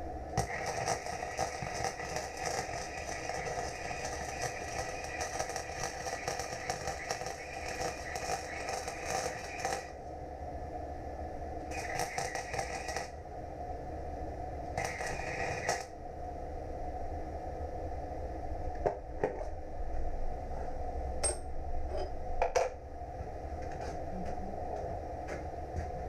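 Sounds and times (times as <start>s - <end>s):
welding arc crackling: 0.0s - 10.0s, 11.7s - 13.2s, 14.7s - 16.0s
steady background hum: 0.0s - 26.0s.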